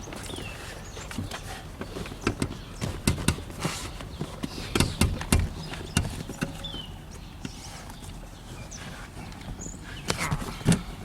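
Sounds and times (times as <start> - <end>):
dull thumps and knocks: 1.1 - 6.8.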